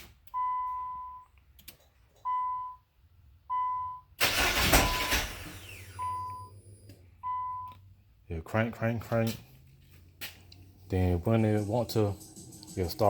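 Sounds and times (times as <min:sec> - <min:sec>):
car warning chime beeping: 0:00.3 - 0:01.4, 0:02.2 - 0:07.8
starter cranking engine: 0:04.2 - 0:05.9.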